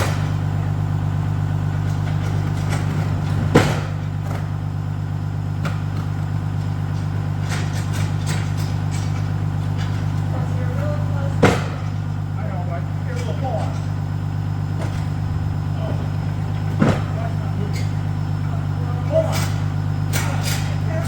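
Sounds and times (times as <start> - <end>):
truck engine running: 0.0 - 21.0.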